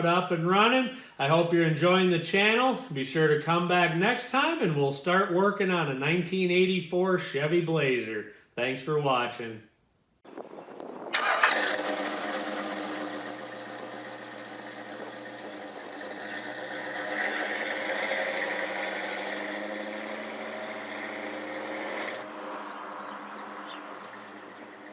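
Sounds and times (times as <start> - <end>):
car engine starting and running: 11.1 - 24.9.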